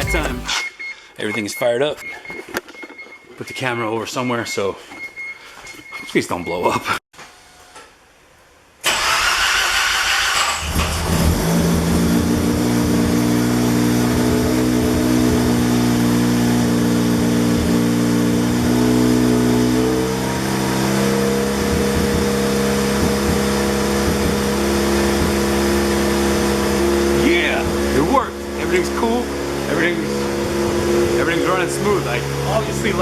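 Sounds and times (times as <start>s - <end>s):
rotary engine starting and idling: 8.8s - 12.7s.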